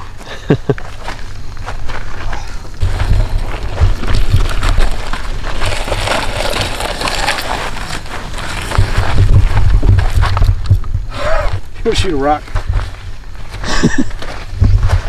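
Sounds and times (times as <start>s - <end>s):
wind rumble on microphone: 0.0s - 15.0s
footsteps crunching through dry leaves: 0.9s - 10.6s.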